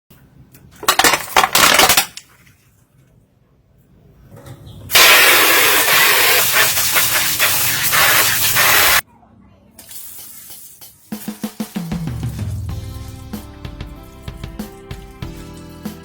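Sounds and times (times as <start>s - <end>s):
water spraying under high pressure: 4.9s - 9.0s.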